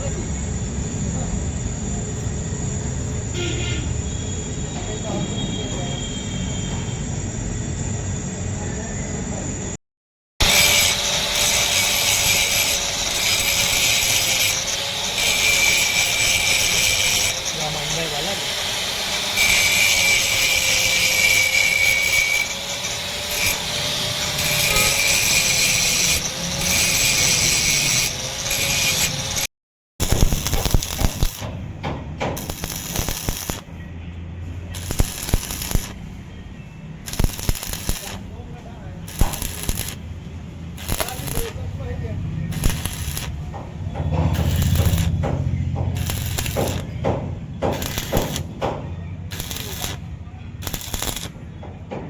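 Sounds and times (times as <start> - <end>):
angle grinder grinding steel: 10.4 - 31.5, 32.4 - 33.6, 34.8 - 36.0, 37.1 - 38.2, 39.1 - 40.0, 40.8 - 41.6, 42.5 - 43.4, 44.2 - 45.2, 45.9 - 47.0, 47.7 - 48.5, 49.3 - 51.3
welding arc crackling and hissing: 10.4 - 31.5, 32.4 - 33.7, 34.8 - 36.0, 37.0 - 38.3, 39.0 - 40.0, 40.8 - 41.9, 42.5 - 43.4, 44.3 - 45.2, 45.9 - 47.0, 47.7 - 48.6, 49.3 - 51.4.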